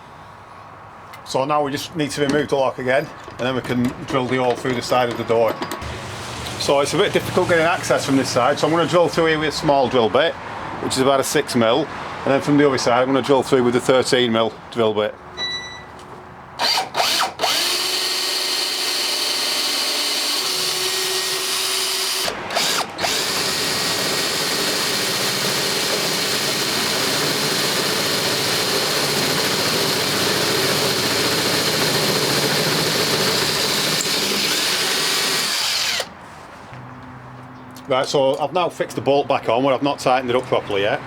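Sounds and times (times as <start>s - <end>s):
electric drill boring through metal panel: 16.6s - 36.1s.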